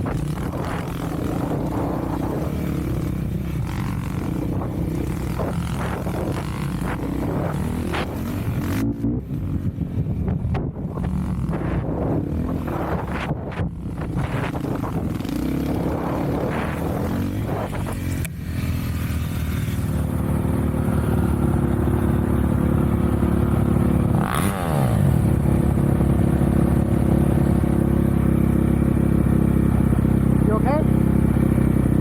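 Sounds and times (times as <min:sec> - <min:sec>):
vehicle engine running: 0:00.0 - 0:32.0.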